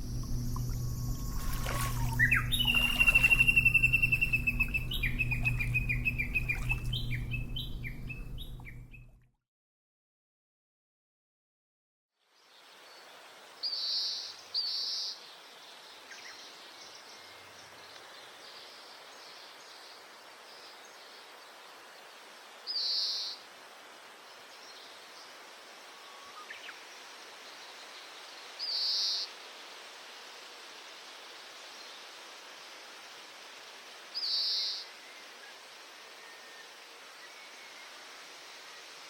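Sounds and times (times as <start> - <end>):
outdoor background noise: 0.0 - 9.1, 12.2 - 39.0
finch buzzy calls: 1.4 - 8.9.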